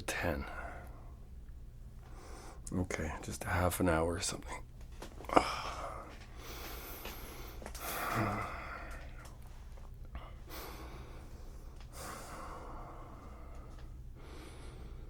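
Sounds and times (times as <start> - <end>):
man breathing slowly: 2.0 - 2.7, 5.2 - 15.0
man sighing: 5.2 - 6.2, 7.8 - 9.3.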